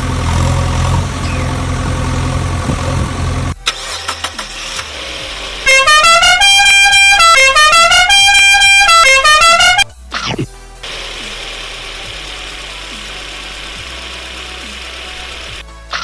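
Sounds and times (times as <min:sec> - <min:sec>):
engine rumble: 0:00.0 - 0:16.0
musical horn playing a tune: 0:05.6 - 0:10.0.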